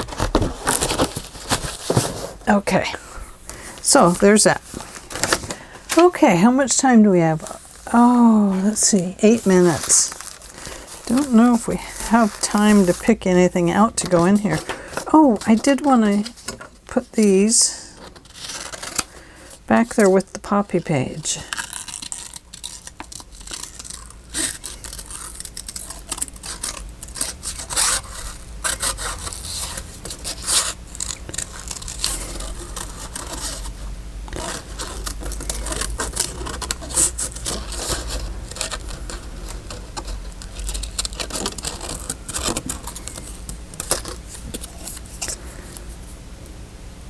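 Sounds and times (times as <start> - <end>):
paper rustling and sliding: 0.0 - 2.5, 3.1 - 6.7, 7.3 - 20.3, 21.3 - 46.2.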